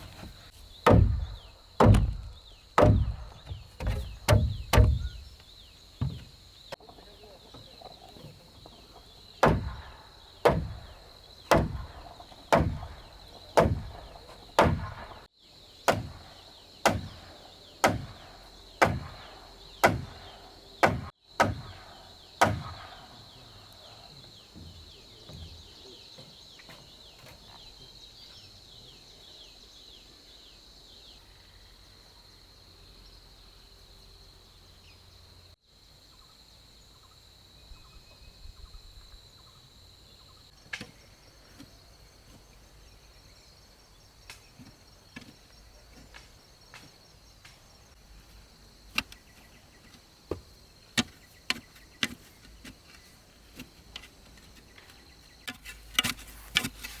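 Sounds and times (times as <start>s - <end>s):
heavy blows on wood: 0.0s - 5.4s, 6.0s - 6.5s, 9.4s - 15.3s, 15.9s - 23.0s.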